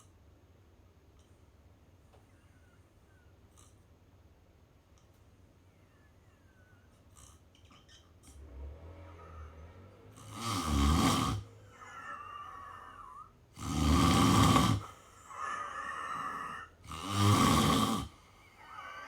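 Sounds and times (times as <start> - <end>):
whistling breaths: 5.6 - 7.0
person snoring: 9.1 - 19.0.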